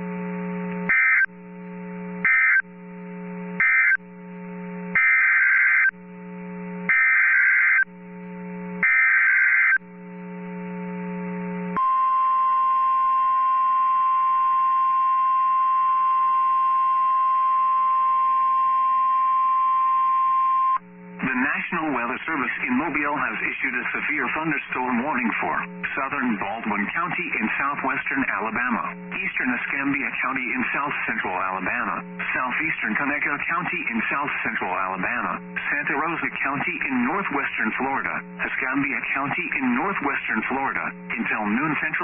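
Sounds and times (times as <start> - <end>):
low hum: 0.0 - 5.0, 5.9 - 6.9, 9.8 - 40.1
screechy data bursts: 0.9 - 1.3, 2.2 - 2.6, 3.6 - 4.0, 5.0 - 5.9, 6.9 - 7.9, 8.8 - 9.8
steady warning alarm tone: 0.9 - 1.3, 2.2 - 2.7, 3.6 - 4.0, 5.0 - 6.0, 6.9 - 7.9, 8.8 - 9.8, 11.8 - 20.9.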